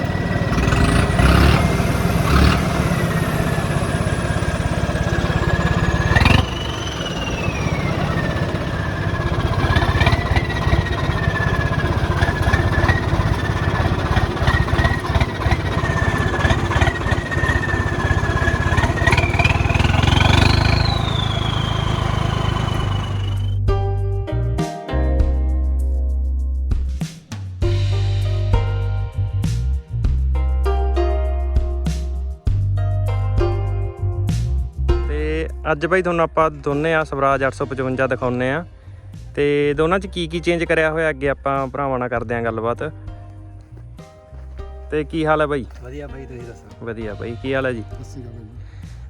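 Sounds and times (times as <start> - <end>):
diesel engine running: 0.0 - 23.6
turbo whistle: 16.1 - 23.6.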